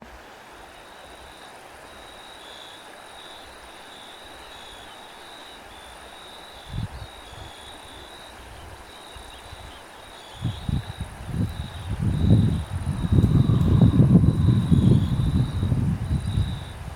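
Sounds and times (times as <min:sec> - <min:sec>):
wind hiss: 0:00.0 - 0:16.9
crickets trilling: 0:00.6 - 0:16.9
wind gust buffeting microphone: 0:06.6 - 0:07.5, 0:10.4 - 0:16.9.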